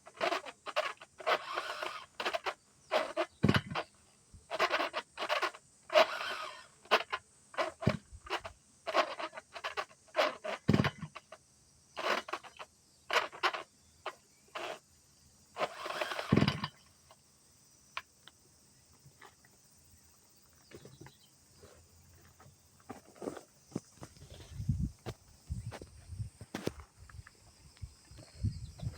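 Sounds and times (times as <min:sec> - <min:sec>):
recoil starter pulls rattling: 0:00.0 - 0:11.4, 0:12.0 - 0:14.8, 0:15.6 - 0:16.8.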